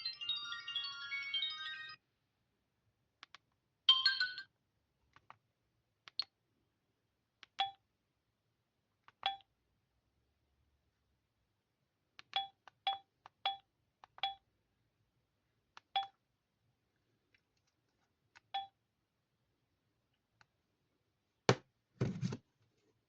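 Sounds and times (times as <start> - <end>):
phone key beeps: 12.2 - 14.4, 18.4 - 18.8.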